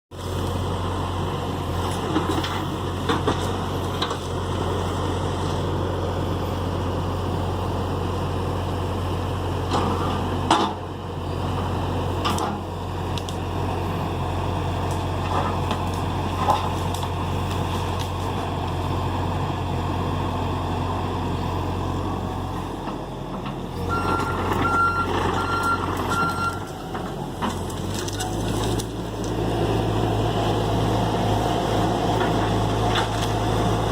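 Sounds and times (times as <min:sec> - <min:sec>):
excavator diesel engine running: 0:00.1 - 0:33.9
backup alarm beeping: 0:23.9 - 0:26.7.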